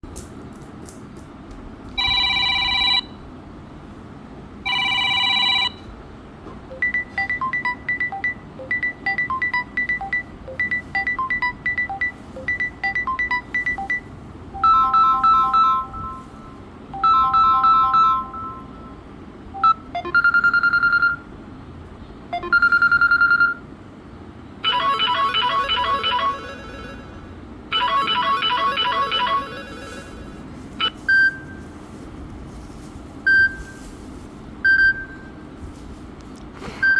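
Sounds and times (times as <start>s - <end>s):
electronic ringtone melodies: 6.7s - 16.4s, 17.0s - 19.0s, 19.6s - 21.2s, 24.6s - 31.6s.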